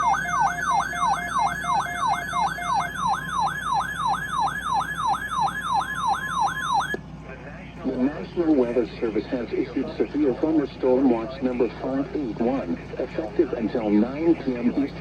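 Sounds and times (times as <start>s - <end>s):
warbling electronic alert siren: 0.0s - 7.0s.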